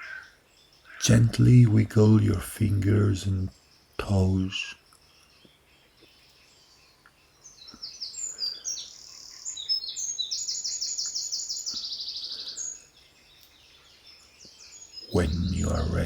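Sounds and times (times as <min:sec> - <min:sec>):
woodland birds singing: 0:00.0 - 0:16.0
bird trill: 0:03.5 - 0:16.0.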